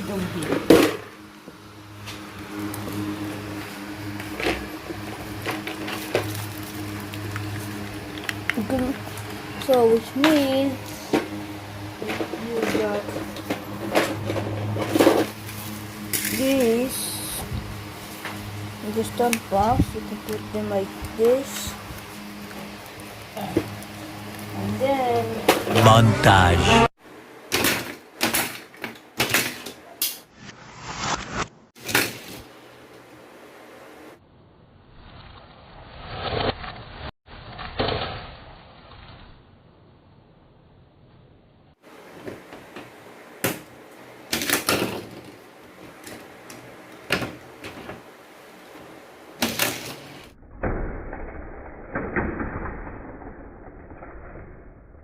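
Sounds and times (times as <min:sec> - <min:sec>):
toy cars rolling with low rumble: 0:02.7 - 0:25.8, 0:44.3 - 0:48.1, 0:49.4 - 0:55.0
toy cars clattering on plastic track: 0:44.3 - 0:45.4, 0:49.4 - 0:50.0.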